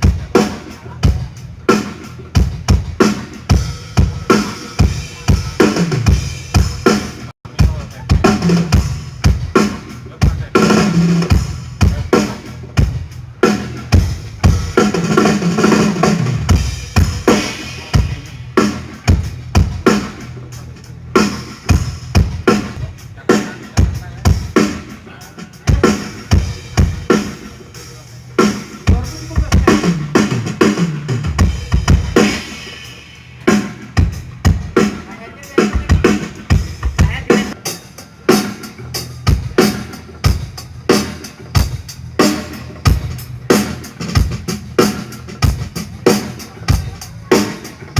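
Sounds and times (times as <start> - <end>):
drum kit hits: 0.0 - 20.4.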